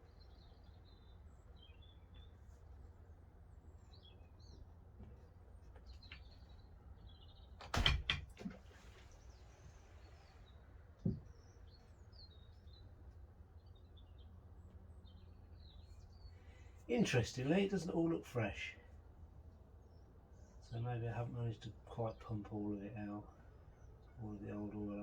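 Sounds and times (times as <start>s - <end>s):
birds chirping: 0.0s - 7.8s, 8.4s - 25.0s
sharp knocks and clatter: 7.6s - 8.6s.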